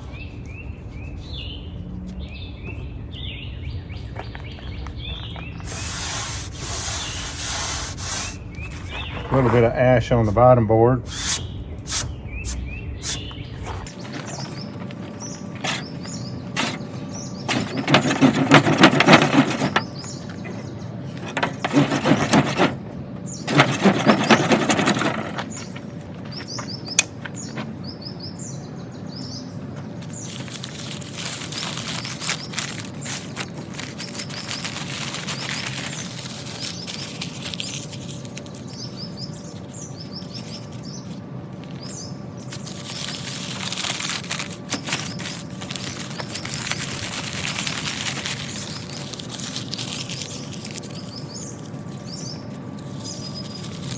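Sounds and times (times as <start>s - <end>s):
small birds chirping: 2.2s - 9.7s, 11.0s - 53.9s
wooden board scraping: 13.7s - 27.9s.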